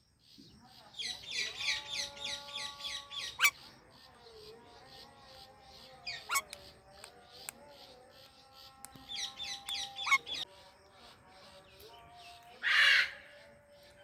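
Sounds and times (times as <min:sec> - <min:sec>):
parakeets chirping: 0:00.8 - 0:10.5.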